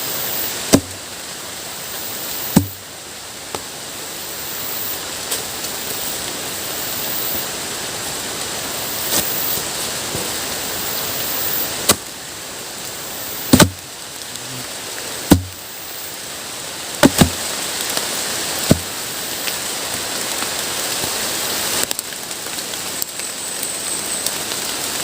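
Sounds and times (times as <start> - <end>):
heavy rain on forest: 0.0 - 25.0
blade chopping into wood: 0.7 - 1.0, 2.5 - 2.8, 13.5 - 13.8, 15.3 - 15.6, 17.0 - 17.4, 18.7 - 18.9.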